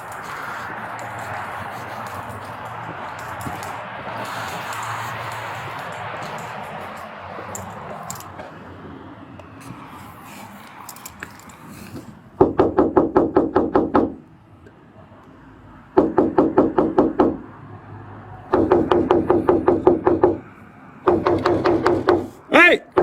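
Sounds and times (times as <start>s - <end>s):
rapid knocking: 16.0s - 17.4s, 18.5s - 20.4s, 21.1s - 22.4s.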